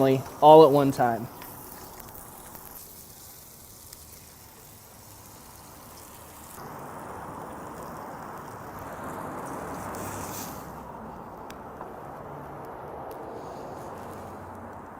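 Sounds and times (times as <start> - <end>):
food sizzling on a griddle: 0.0 - 11.9.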